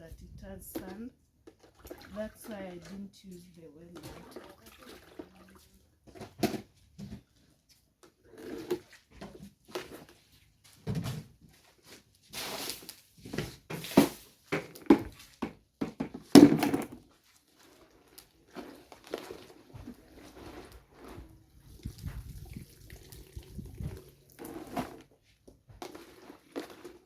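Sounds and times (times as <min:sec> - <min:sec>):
knocks and clatter of handling: 0:13.2 - 0:17.2.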